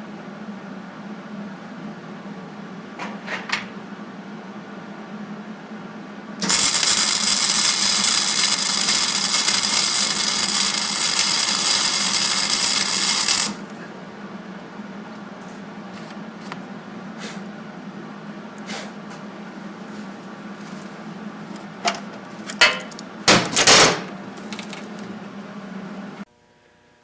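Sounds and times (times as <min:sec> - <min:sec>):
welding arc crackling: 0:06.4 - 0:13.7.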